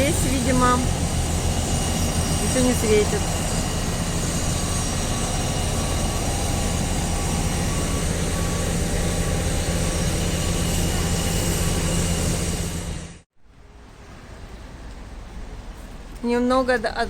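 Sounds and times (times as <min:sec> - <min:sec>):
road-works machinery engine drone: 0:00.0 - 0:13.3.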